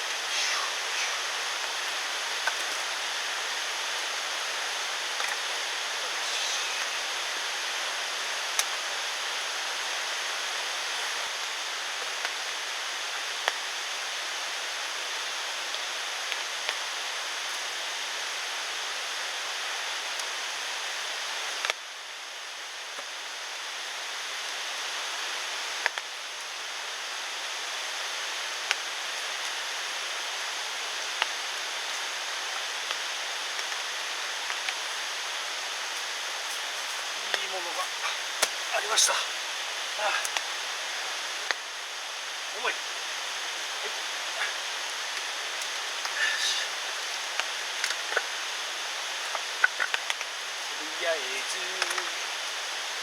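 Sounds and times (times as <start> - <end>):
rushing water: 0.0 - 12.2, 29.0 - 53.0.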